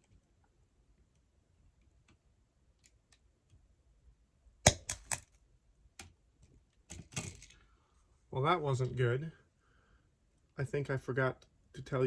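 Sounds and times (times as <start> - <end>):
wire cutters clicking: 4.7 - 5.2.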